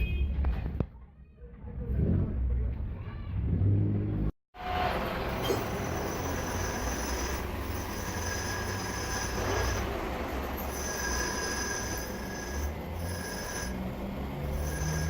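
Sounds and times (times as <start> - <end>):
metal lathe running: 5.0 - 15.0.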